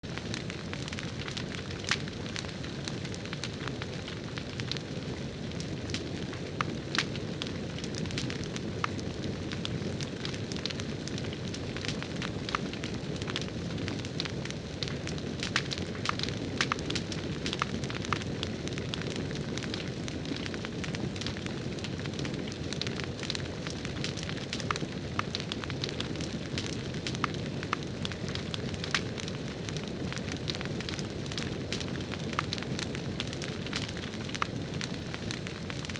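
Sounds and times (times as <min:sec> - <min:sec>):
crackling campfire: 0:00.0 - 0:35.9.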